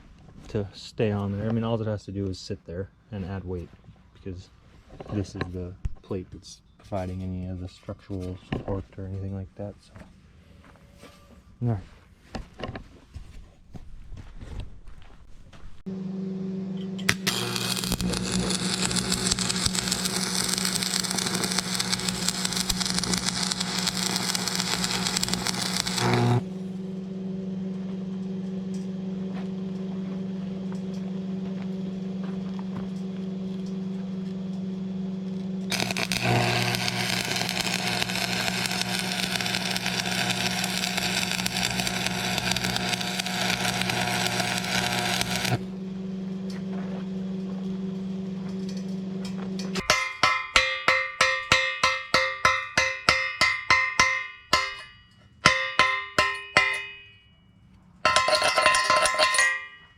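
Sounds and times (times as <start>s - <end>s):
welder transformer hum: 15.9s - 49.8s
crackling welding arc: 17.0s - 26.5s, 35.7s - 45.7s.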